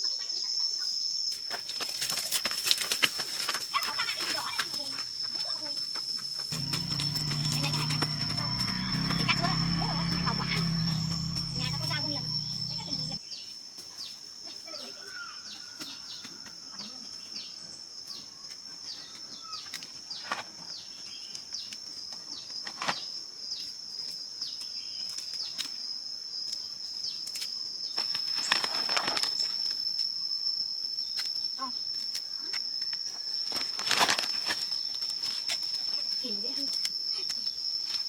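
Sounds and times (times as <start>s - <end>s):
high-pitched insect drone: 4.4s - 13.2s.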